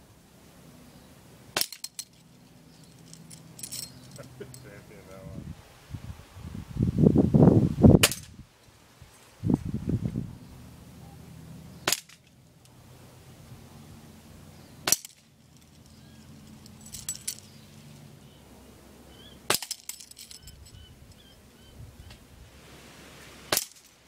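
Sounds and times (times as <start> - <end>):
rattle of clicks: 1.6 - 4.6
air rifle shots: 8.0 - 8.3.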